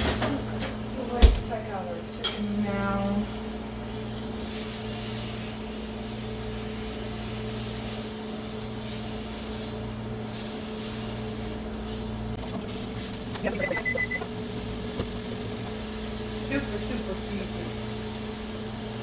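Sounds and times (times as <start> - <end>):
appliance electrical hum: 0.0 - 19.0
high electronic beeps: 13.4 - 14.3.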